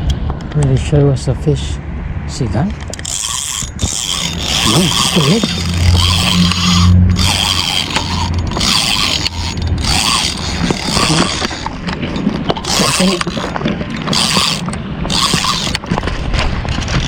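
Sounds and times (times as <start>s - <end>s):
fishing reel cranking: 2.9s - 16.2s.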